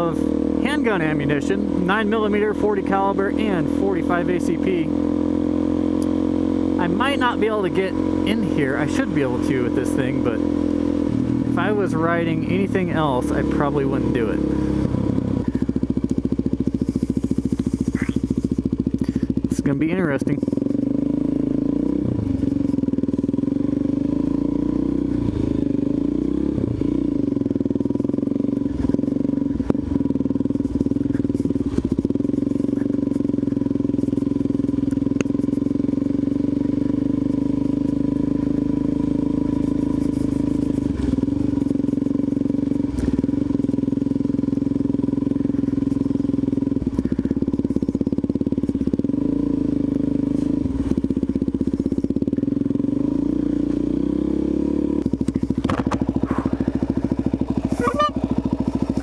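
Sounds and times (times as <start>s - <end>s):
motorcycle engine running: 0.0s - 59.0s
knocks and clatters from bike: 55.0s - 57.6s.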